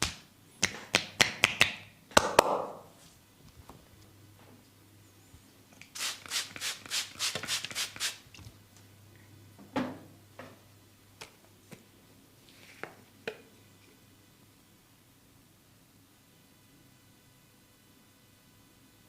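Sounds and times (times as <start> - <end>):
hands rubbing skin: 5.8 - 8.2.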